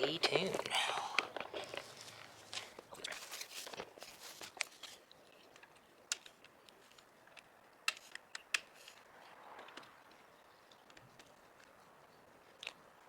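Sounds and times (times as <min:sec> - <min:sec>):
rustling: 0:00.0 - 0:05.7.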